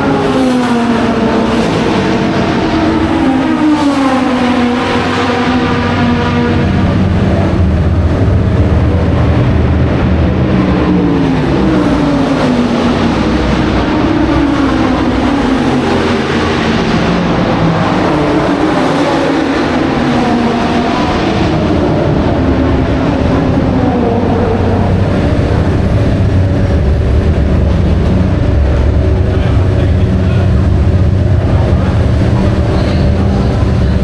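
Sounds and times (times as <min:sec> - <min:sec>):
racing car engines accelerating: 0:00.0 - 0:34.0.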